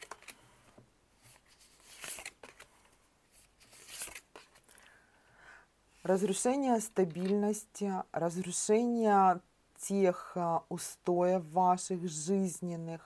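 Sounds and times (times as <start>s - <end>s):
cards rustling and snapping: 0.0s - 4.9s.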